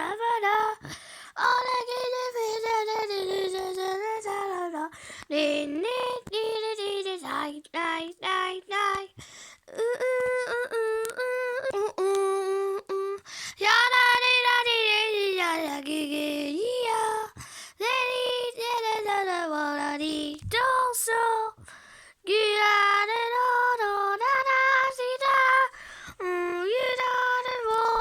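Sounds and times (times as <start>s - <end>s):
child singing unaccompanied: 0.0s - 28.0s.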